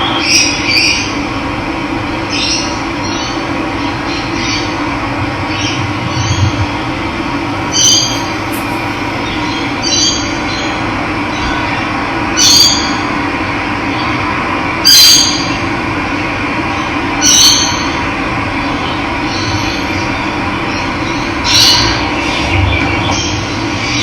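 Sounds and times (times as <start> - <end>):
bird squealing call: 7.6 - 10.1.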